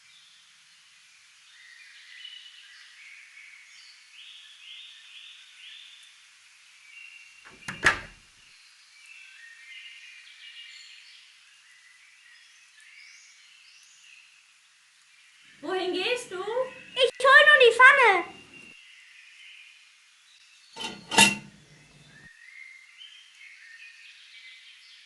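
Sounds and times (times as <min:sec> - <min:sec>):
faint steady hiss: 0:00.0 - 0:25.0
birds chirping: 0:15.5 - 0:18.8, 0:20.8 - 0:22.3.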